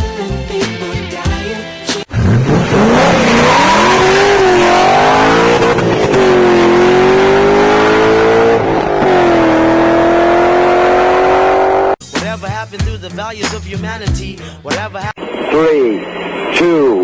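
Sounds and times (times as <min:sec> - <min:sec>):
racing car engine accelerating: 0:02.1 - 0:12.0.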